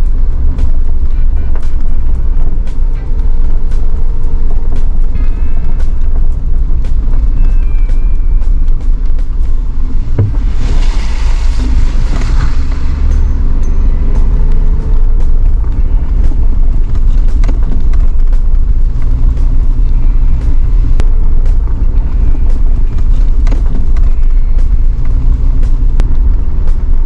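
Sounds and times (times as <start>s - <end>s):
vehicle rumbling on gravel: 0.0s - 27.0s
hiss: 9.4s - 15.3s.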